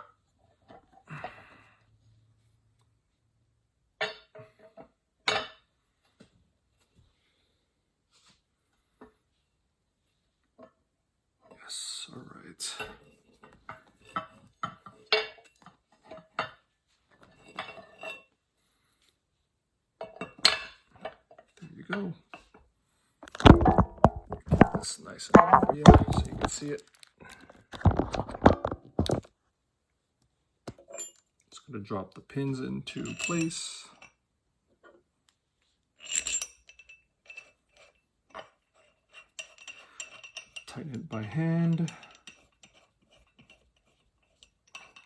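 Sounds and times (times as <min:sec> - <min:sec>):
metal pins clinking: 0:23.3 - 0:27.0.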